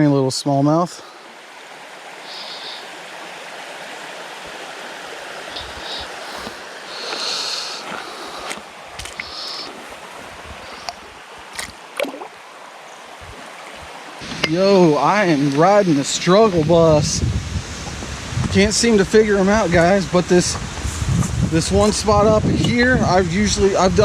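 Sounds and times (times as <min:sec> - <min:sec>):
creek water running: 0:00.0 - 0:24.0
faint clicks: 0:07.9 - 0:09.8, 0:10.7 - 0:12.3.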